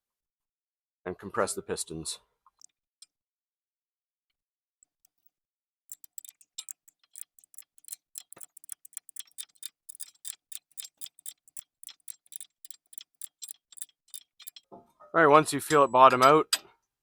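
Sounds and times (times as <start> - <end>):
ratchet clicking: 4.8 - 5.2, 5.9 - 14.7.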